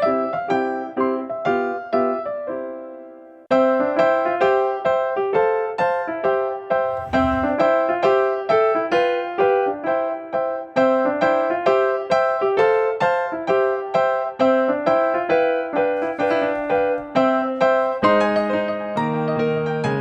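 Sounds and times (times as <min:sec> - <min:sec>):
piano music: 0:09.5 - 0:20.0.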